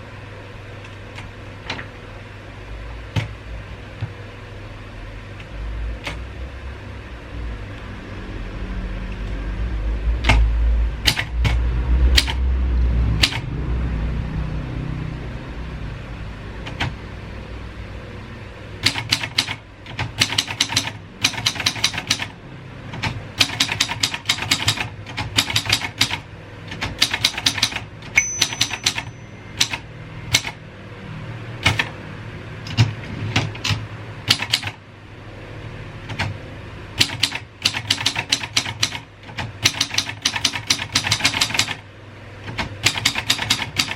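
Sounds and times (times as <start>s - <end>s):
manual typewriter typing: 11.0s - 11.6s, 18.8s - 30.6s, 31.6s - 31.9s, 32.7s - 34.8s, 36.1s - 36.4s, 37.0s - 41.8s, 42.4s - 43.9s.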